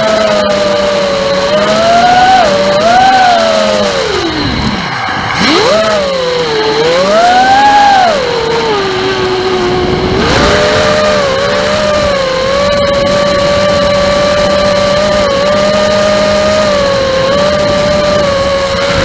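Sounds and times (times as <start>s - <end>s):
drone motors whining: 0.0s - 19.0s.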